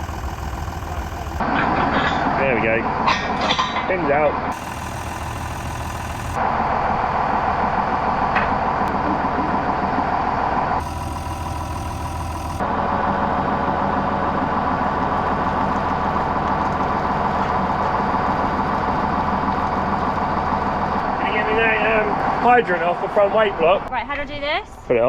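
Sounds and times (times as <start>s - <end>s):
tractor diesel engine idling: 0.0s - 1.5s, 4.0s - 23.9s.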